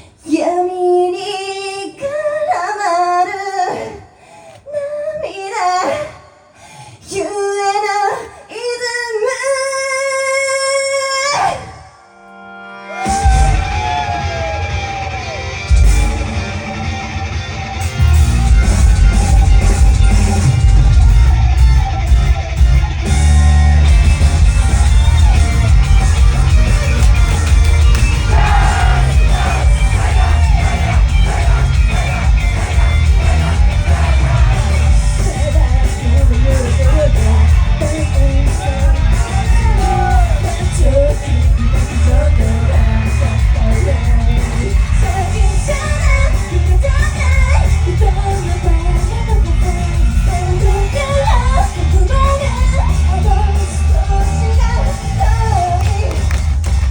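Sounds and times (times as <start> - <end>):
loud rock music with singing: 12.8 - 56.9
heavy steady bass: 17.8 - 56.9.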